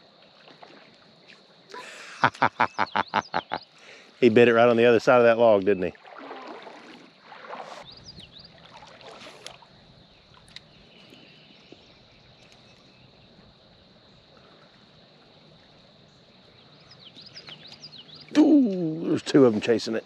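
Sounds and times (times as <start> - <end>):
water sloshing and splashing: 0.0 - 1.7, 5.1 - 12.9
shallow water flowing: 0.0 - 2.7, 3.6 - 20.0.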